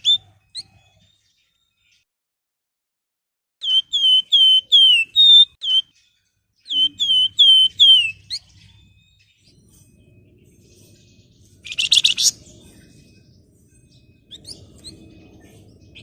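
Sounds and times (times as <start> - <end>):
bird singing downslurred whistles: 3.6 - 6.0, 6.6 - 8.6, 11.6 - 12.4, 14.3 - 15.2.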